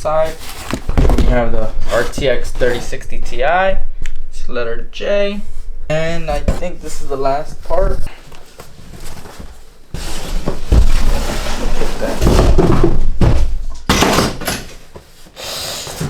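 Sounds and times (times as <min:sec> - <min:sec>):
packaging rustling and scraping: 0:00.0 - 0:03.1, 0:07.6 - 0:13.0.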